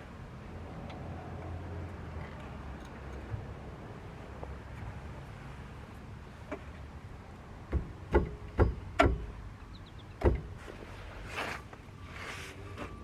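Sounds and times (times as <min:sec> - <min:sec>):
scraping rustles: 0:10.6 - 0:12.8.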